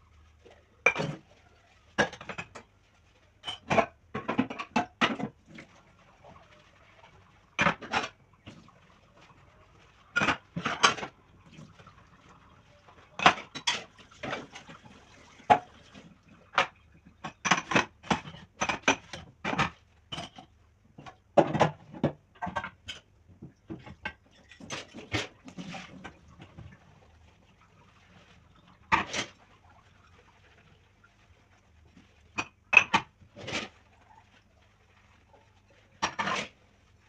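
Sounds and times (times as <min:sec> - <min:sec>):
dishes and cutlery clattering: 0:00.8 - 0:01.2, 0:03.4 - 0:05.4, 0:07.6 - 0:08.2, 0:10.1 - 0:11.1, 0:13.1 - 0:14.8, 0:16.6 - 0:23.1.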